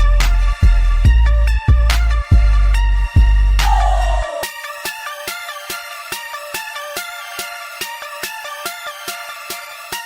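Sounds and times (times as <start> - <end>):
heavy bass: 0.0 - 4.5.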